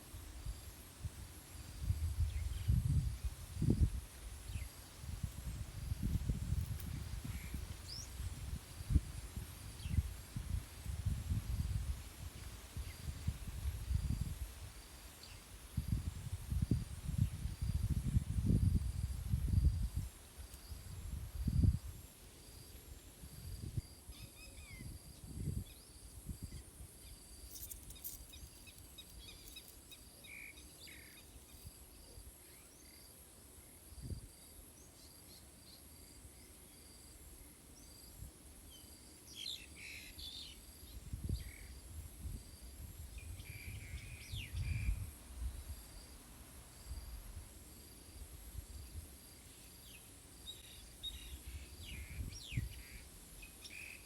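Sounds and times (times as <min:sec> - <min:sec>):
wind gusting against microphone: 0:00.2 - 0:22.0, 0:40.9 - 0:46.1.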